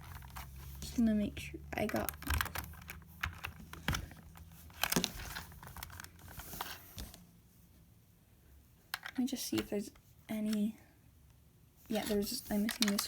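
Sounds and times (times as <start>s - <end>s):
plastic bricks clicking together: 1.9s - 6.0s, 8.9s - 9.2s, 12.6s - 13.0s.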